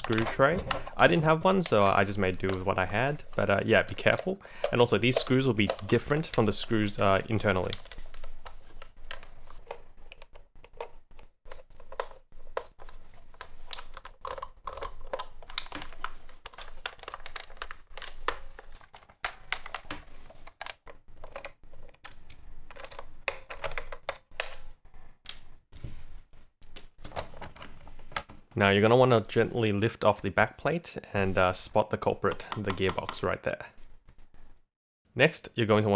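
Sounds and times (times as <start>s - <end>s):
screwdriver clicking on plastic: 0.0s - 1.0s, 32.3s - 33.2s.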